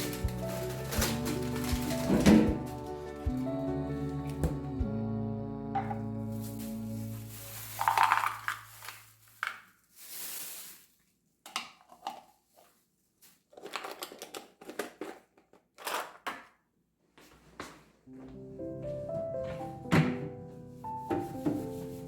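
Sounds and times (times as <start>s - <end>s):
kitchen items clattering: 0.0s - 2.9s, 7.3s - 10.8s, 11.5s - 12.7s, 13.5s - 16.5s, 21.0s - 22.0s.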